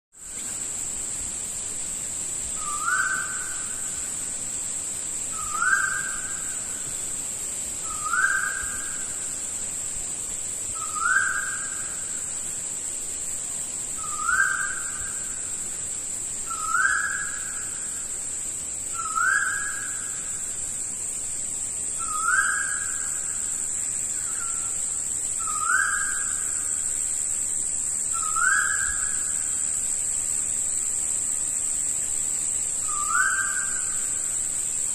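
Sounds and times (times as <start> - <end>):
high-pitched insect drone: 0.2 - 34.9
bird whistled call: 2.6 - 3.6, 5.4 - 6.3, 7.9 - 8.9, 10.8 - 11.8, 14.0 - 15.1, 16.5 - 17.6, 18.9 - 20.1, 22.0 - 23.1, 25.4 - 26.6, 28.1 - 29.3, 32.8 - 34.0.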